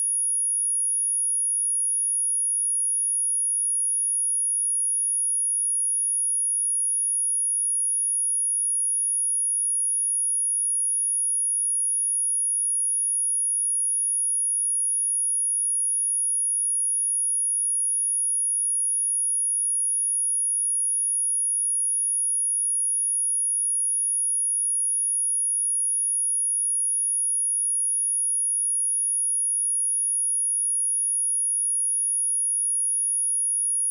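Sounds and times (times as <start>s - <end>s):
high-pitched sine-wave test tone: 17.8s - 33.9s.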